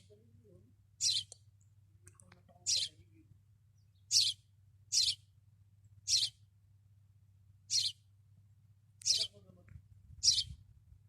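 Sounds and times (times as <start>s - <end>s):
sparrow chirping: 0.9s - 1.4s, 2.6s - 3.1s, 3.7s - 5.4s, 6.0s - 6.5s, 7.6s - 8.1s, 9.0s - 9.4s, 10.1s - 10.6s.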